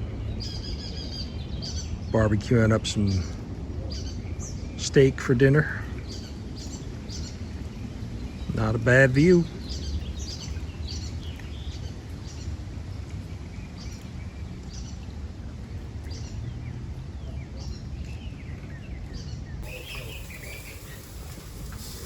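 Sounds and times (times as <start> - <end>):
birds chirping: 0.0 - 13.0, 16.1 - 22.0
low outdoor rumble: 0.0 - 22.0
lower bird chirps: 19.6 - 22.0.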